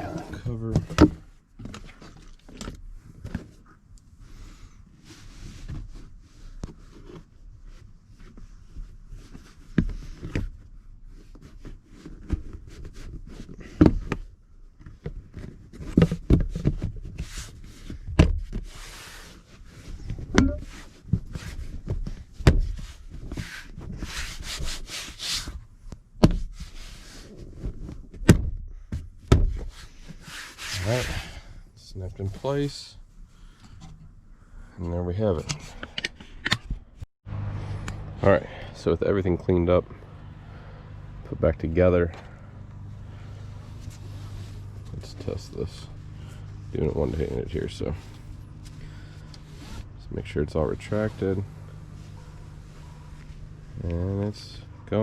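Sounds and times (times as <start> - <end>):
rubbing and scraping: 29.6 - 31.4, 43.1 - 49.9, 50.6 - 55.0.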